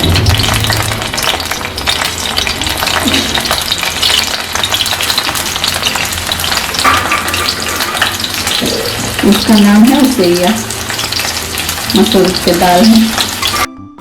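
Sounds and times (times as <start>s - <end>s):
spices sizzling in hot oil: 0.0s - 13.7s
spoon scraping a pan: 6.7s - 9.4s, 13.2s - 13.7s.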